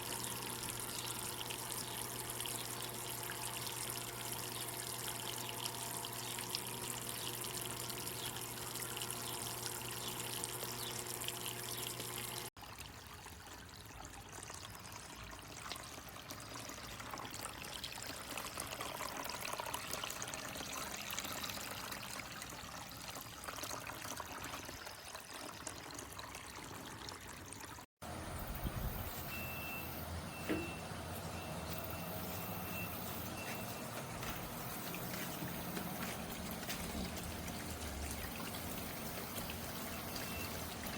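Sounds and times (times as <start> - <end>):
fountain water splashing: 34.2 - 40.9.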